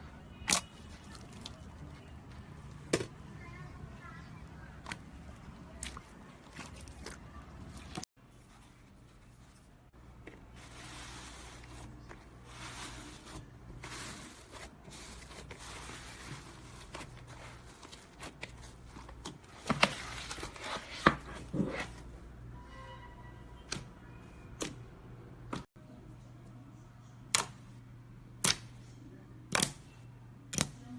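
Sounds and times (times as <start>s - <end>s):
slime squelching by hand: 4.7s - 8.0s.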